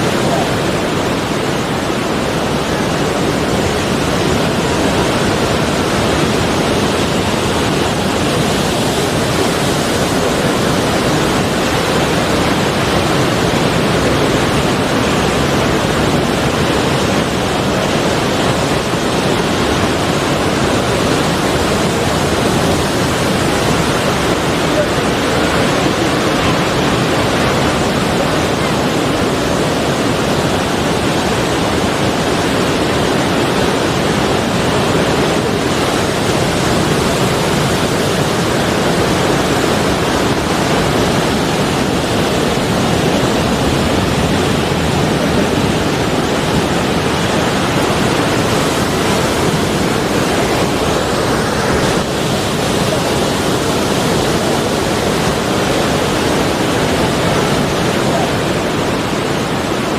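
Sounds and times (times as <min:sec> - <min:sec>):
sea waves washing on shore: 0:00.0 - 0:59.9.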